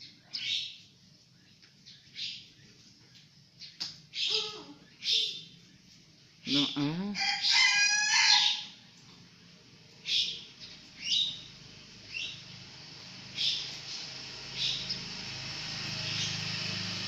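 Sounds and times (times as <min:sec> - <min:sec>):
shrill bird cry: 0:00.0 - 0:00.9, 0:03.6 - 0:05.7, 0:06.4 - 0:08.8, 0:10.0 - 0:11.5, 0:13.4 - 0:13.8, 0:14.5 - 0:15.2
bird chirping: 0:00.0 - 0:08.8, 0:09.4 - 0:17.0.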